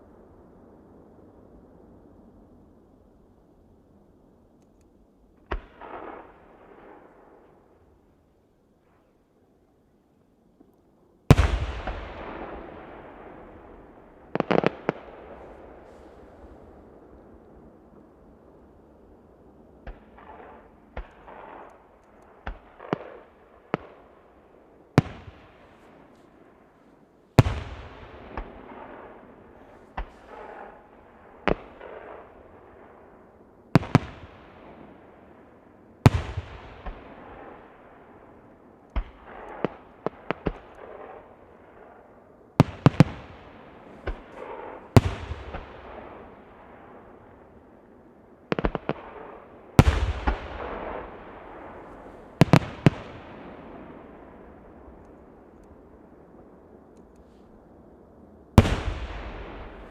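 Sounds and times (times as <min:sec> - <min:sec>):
fireworks bursting with crackle: 0:10.6 - 0:17.4, 0:27.4 - 0:33.0, 0:39.0 - 0:42.0, 0:42.6 - 0:47.4, 0:48.5 - 0:57.6, 0:58.6 - 0:59.9
heavy fireworks booms: 0:11.3 - 0:17.4, 0:27.4 - 0:33.0, 0:36.1 - 0:38.0, 0:42.6 - 0:47.4, 0:48.5 - 0:55.0, 0:58.6 - 0:59.9.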